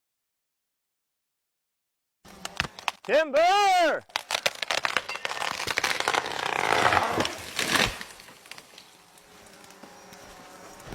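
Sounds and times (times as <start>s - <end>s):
wood cracking and splintering: 2.3s - 10.9s
tree crashing to the ground: 4.1s - 8.9s.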